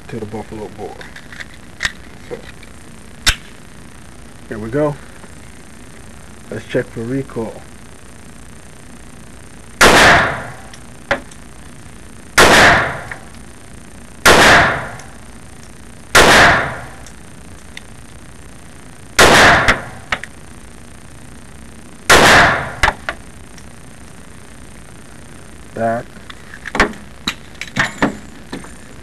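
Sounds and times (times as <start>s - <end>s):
pistol shots: 9.8s - 10.7s, 12.4s - 13.2s, 14.2s - 15.1s, 16.1s - 17.0s, 19.2s - 20.0s, 22.1s - 23.0s.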